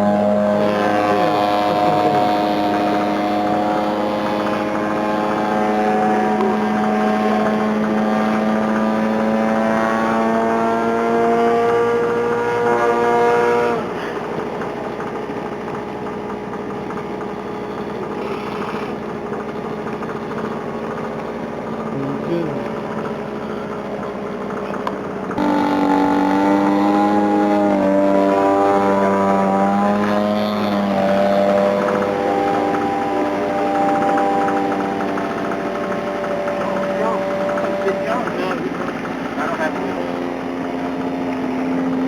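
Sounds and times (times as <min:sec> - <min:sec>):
model airplane engine droning: 0:00.0 - 0:42.0.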